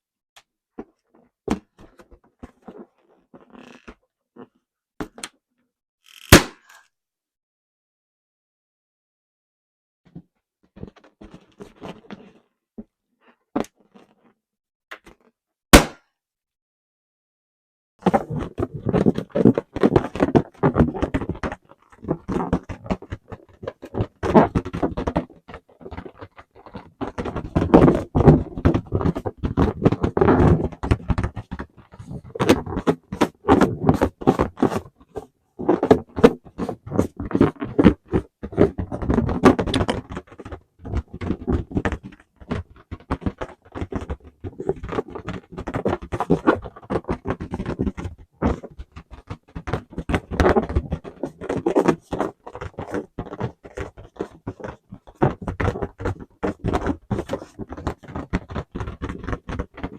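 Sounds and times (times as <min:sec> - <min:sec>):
rubber balloons squeaking: 0:06.1 - 0:06.8.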